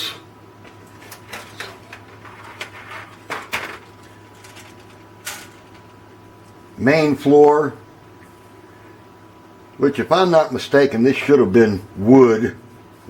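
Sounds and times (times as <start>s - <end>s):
faint steady hum: 0.0s - 13.0s
plastic parts clicking and rustling: 0.6s - 5.9s.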